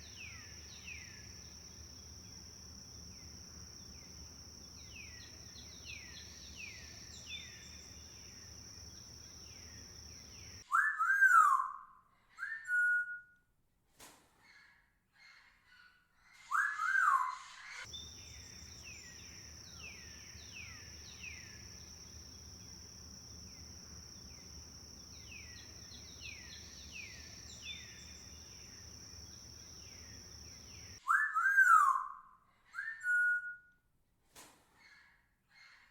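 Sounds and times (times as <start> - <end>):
birds whistling: 30.6 - 32.1.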